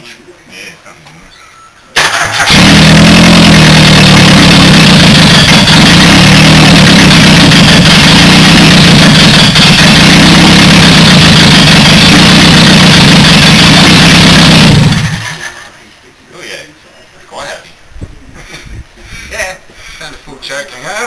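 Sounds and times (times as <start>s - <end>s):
car engine fast idling: 2.0s - 15.6s.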